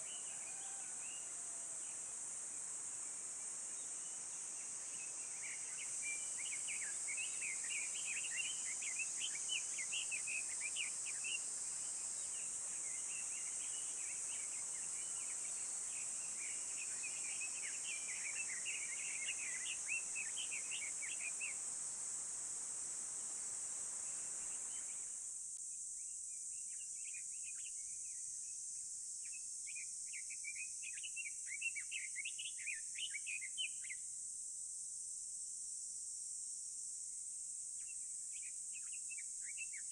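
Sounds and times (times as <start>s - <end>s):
low background hiss: 0.0s - 39.9s
songbird singing: 3.9s - 21.7s.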